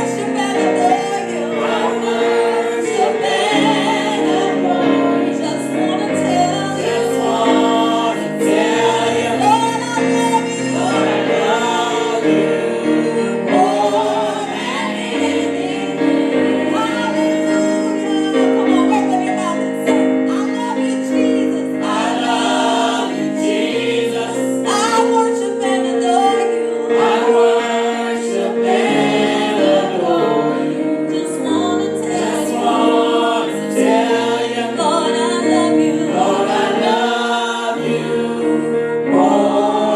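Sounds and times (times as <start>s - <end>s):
choir singing gospel: 0.0s - 39.9s.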